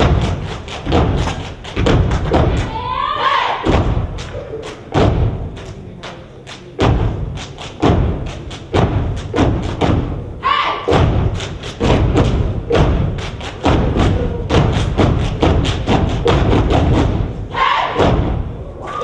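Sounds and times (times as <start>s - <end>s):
hands clapping: 0.0s - 2.7s, 4.1s - 9.8s, 13.2s - 16.4s.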